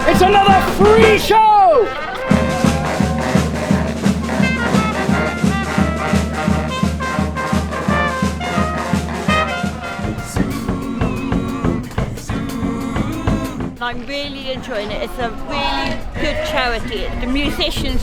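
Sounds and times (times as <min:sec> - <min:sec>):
brass band playing: 0:00.0 - 0:13.9.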